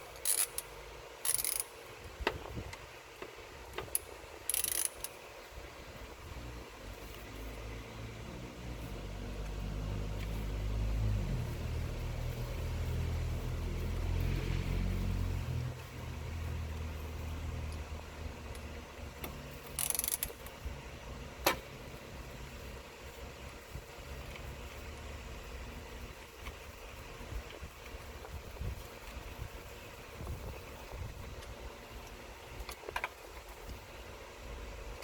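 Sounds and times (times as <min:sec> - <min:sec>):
low mechanical engine rumble: 0:05.3 - 0:35.0
sharp metallic click: 0:19.2 - 0:20.5.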